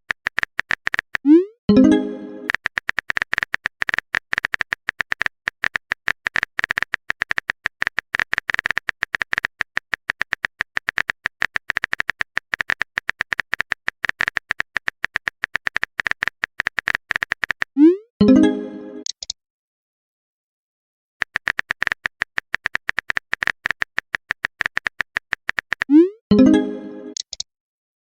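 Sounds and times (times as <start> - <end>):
phone keyboard typing clicks: 0.1 - 1.4, 2.4 - 17.8, 19.0 - 19.4, 21.2 - 26.0, 27.1 - 27.5.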